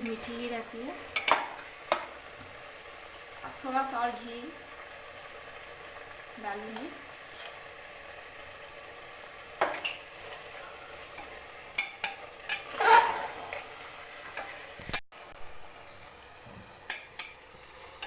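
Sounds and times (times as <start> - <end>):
food sizzling in ghee: 0.0 - 18.0
spoon knocking against pan: 1.2 - 2.1, 9.6 - 10.0
spoon stirring and scraping: 7.3 - 7.6, 9.6 - 14.6.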